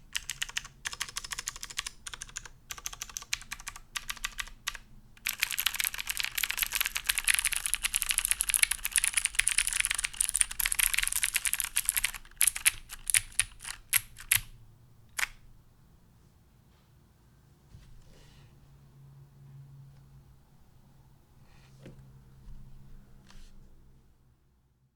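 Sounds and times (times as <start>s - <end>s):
clicky mechanical keyboard typing: 0.0s - 15.4s.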